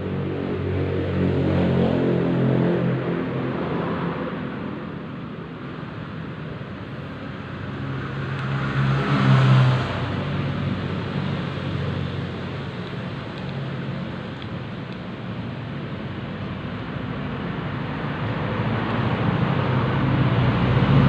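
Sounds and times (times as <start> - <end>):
vehicle engine humming: 4.4 - 21.0.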